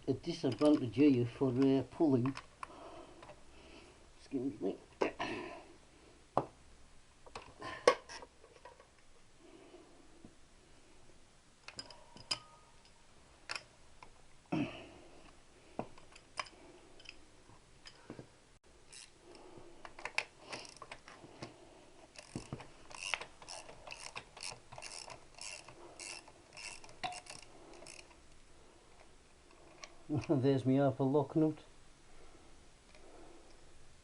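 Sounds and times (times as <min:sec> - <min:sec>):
metallic clicks and knocks: 0:11.6 - 0:14.2
ratchet wrench pawl clicking: 0:18.9 - 0:19.2, 0:20.1 - 0:21.0, 0:22.1 - 0:28.2.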